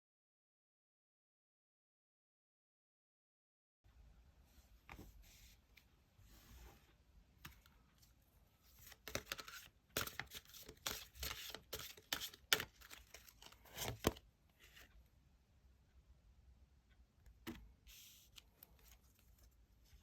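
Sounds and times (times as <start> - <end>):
cards shuffling: 8.8 - 14.2.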